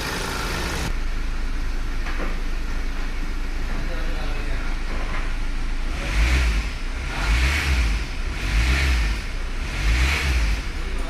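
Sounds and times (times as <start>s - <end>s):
diesel engine idling: 0.0s - 9.8s
engine revving in blips: 5.8s - 11.0s.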